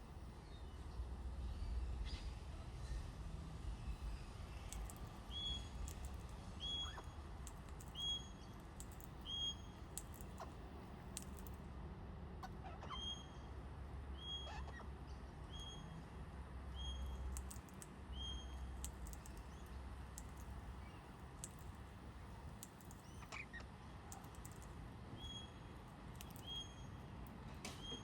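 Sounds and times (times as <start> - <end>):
low outdoor rumble: 0.0 - 28.0
sharp clicks: 17.4 - 17.9, 18.8 - 19.5.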